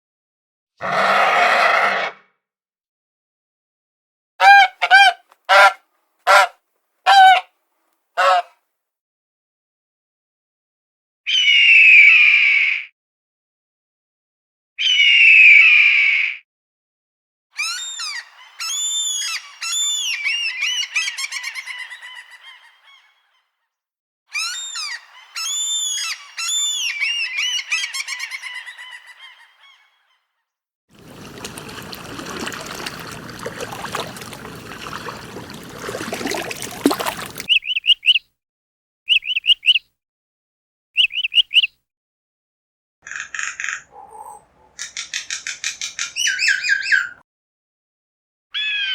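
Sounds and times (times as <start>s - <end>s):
bird honking: 4.4s - 6.5s, 7.1s - 7.4s, 8.2s - 8.5s, 31.0s - 37.5s.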